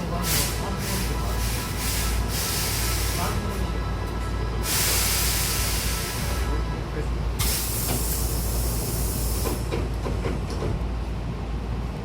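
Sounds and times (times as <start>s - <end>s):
train rumble: 0.0s - 12.0s
air hiss of train doors: 0.2s - 3.4s, 4.6s - 6.5s, 7.4s - 10.8s.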